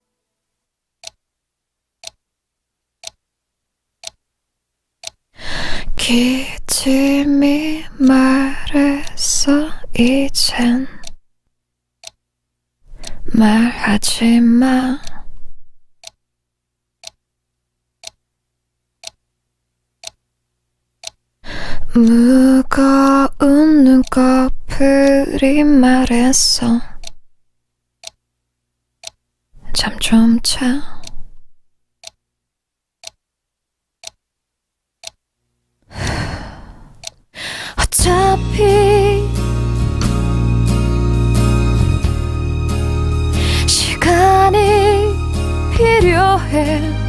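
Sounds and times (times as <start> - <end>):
faint steady hum: 0.1 - 11.1, 11.7 - 31.6
clock ticking: 1.0 - 1.2, 2.0 - 2.2, 3.0 - 3.2, 4.0 - 4.2, 5.0 - 5.2, 12.0 - 12.2, 17.0 - 17.2, 18.0 - 18.2, 19.0 - 19.2, 20.0 - 20.2, 21.0 - 21.2, 28.0 - 28.2, 29.0 - 29.2, 33.0 - 33.2, 35.0 - 35.2, 37.0 - 37.2.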